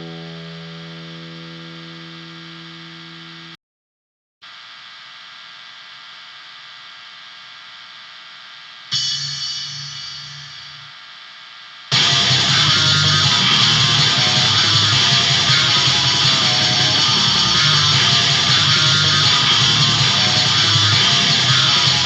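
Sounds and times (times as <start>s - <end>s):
metal band with distorted guitars: 0.0s - 2.7s, 11.9s - 22.0s
loud guitar chord: 0.0s - 3.6s, 11.9s - 22.0s
distorted pitched drone: 8.9s - 22.0s
thin hissing drone: 12.0s - 22.0s.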